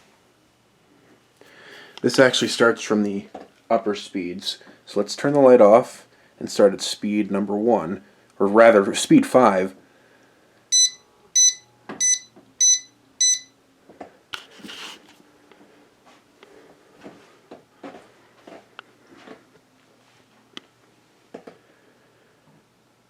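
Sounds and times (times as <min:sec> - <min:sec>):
fan control beeping: 0:10.7 - 0:13.6.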